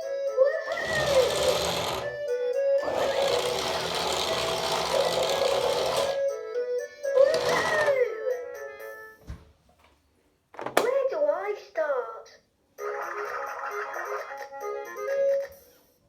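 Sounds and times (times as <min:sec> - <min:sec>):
toy car motor whirring: 0:00.6 - 0:06.3, 0:07.2 - 0:08.1.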